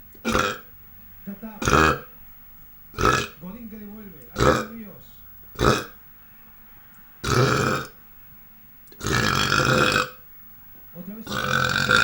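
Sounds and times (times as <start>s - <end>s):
man burping loudly: 0.2s - 0.7s, 1.6s - 2.1s, 3.0s - 3.4s, 4.4s - 4.9s, 5.6s - 6.0s, 7.2s - 8.0s, 9.0s - 10.2s, 11.2s - 12.0s.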